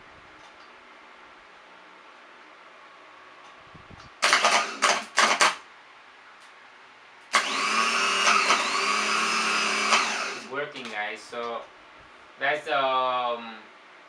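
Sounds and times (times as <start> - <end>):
starter motor whining: 4.2 - 5.5, 7.3 - 10.5.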